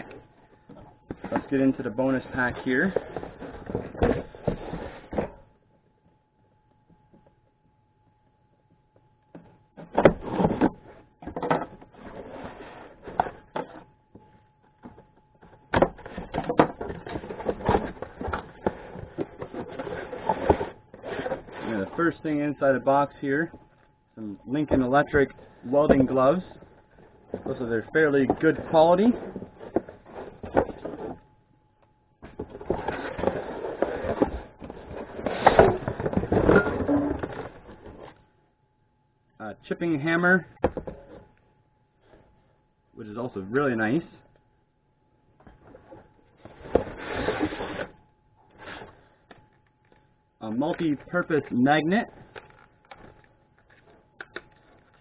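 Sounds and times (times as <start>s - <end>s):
cardboard box rustling: 15.8s - 22.0s.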